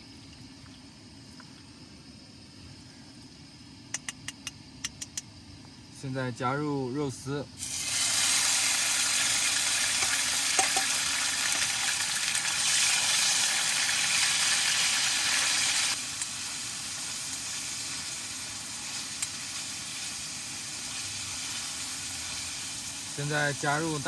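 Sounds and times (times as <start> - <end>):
pork sizzling in hot oil: 7.6 - 24.0.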